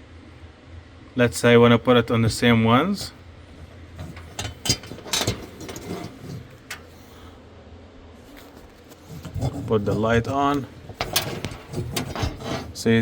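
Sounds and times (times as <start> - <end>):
metal tray support clicks and knocks: 3.6 - 7.2, 9.0 - 12.8.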